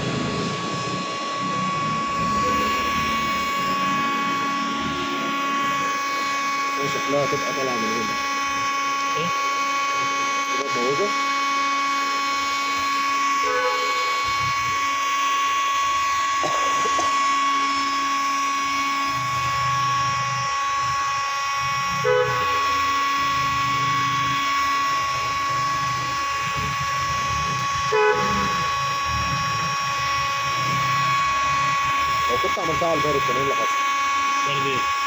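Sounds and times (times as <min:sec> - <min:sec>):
hot-air gun blowing: 0:00.0 - 0:35.0
short toot: 0:16.4 - 0:17.3.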